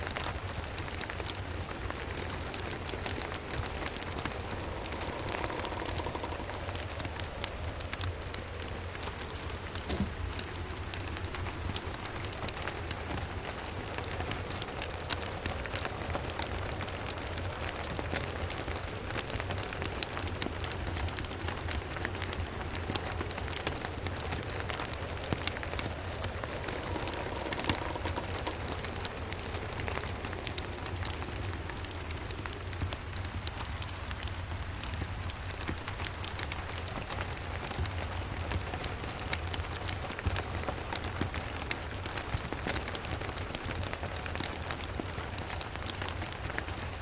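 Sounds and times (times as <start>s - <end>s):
steady rain hiss: 0.0s - 47.0s
wood fire crackling: 0.0s - 47.0s.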